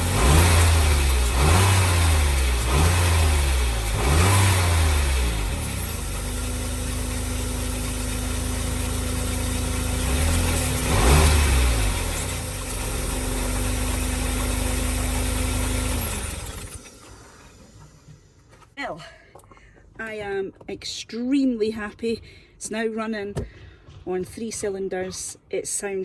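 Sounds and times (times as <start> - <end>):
car engine idling and revving: 0.0 - 18.6.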